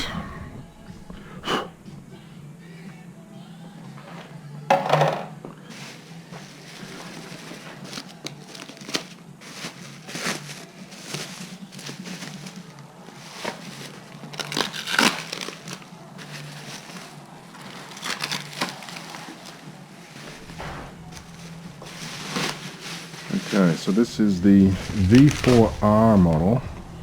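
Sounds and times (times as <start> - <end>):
packing material crumpling: 5.7 - 27.0.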